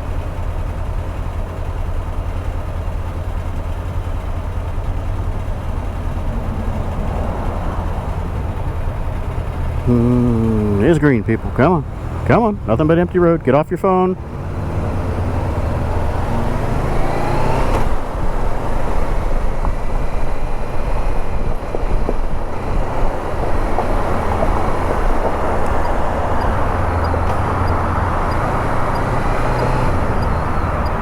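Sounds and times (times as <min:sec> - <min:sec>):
motorcycle engine running: 0:00.0 - 0:31.0
road noise: 0:00.0 - 0:31.0.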